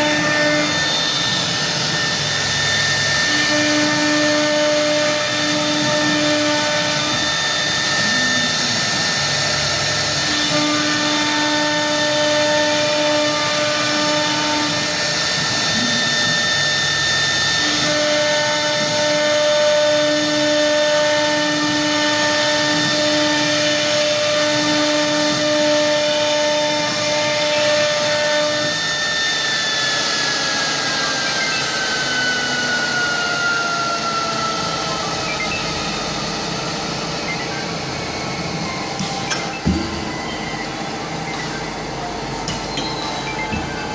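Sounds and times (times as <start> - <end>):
lower hum: 0.0 - 11.3, 26.8 - 43.9
cnc router whining: 0.0 - 43.9.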